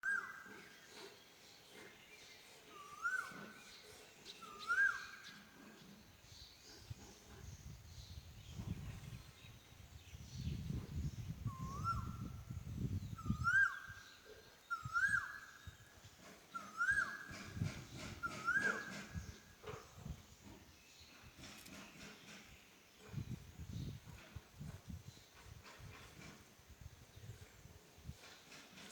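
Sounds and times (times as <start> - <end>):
cuckoo calling: 0.0 - 0.5, 13.2 - 14.0, 14.7 - 15.8, 16.5 - 19.2.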